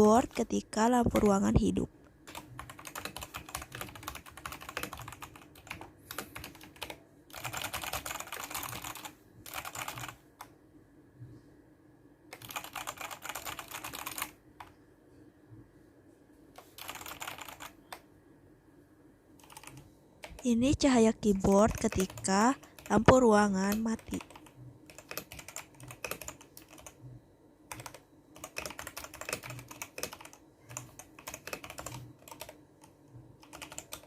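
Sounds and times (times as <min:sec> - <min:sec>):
mechanical keyboard clicks: 0:02.3 - 0:10.2, 0:12.3 - 0:14.7, 0:16.6 - 0:18.0, 0:23.7 - 0:27.0, 0:27.7 - 0:32.5, 0:33.4 - 0:34.0.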